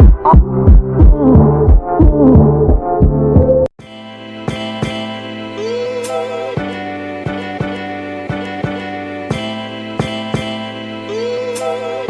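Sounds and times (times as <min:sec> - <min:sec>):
electronic music with kick drum: 0:00.0 - 0:03.7.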